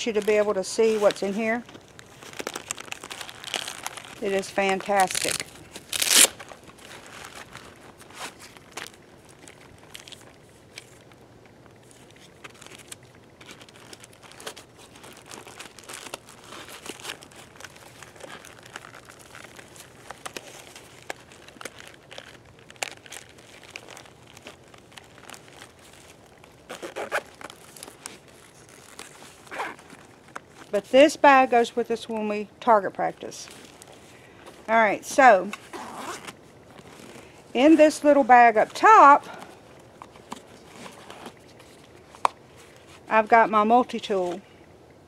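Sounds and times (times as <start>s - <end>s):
plastic crinkling and rustling: 0.0s - 44.4s.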